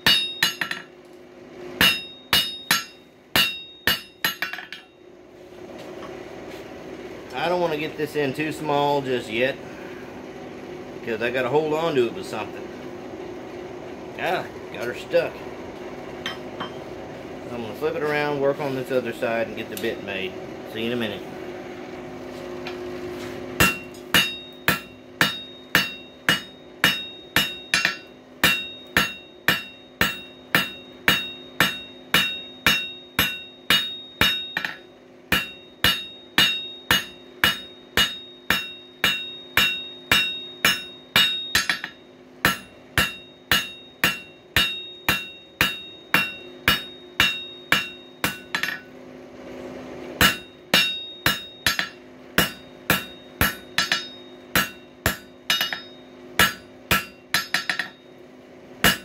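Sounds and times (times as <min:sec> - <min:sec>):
hammer blows on anvil ringing: 0:00.0 - 0:00.9, 0:01.8 - 0:05.0, 0:16.2 - 0:16.8, 0:23.6 - 0:49.0, 0:50.2 - 0:58.2
steady low hum: 0:00.0 - 0:59.0.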